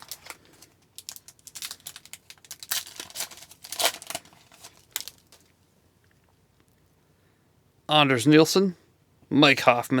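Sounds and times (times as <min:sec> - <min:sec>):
wrapper tearing and crinkling: 0:00.0 - 0:05.5.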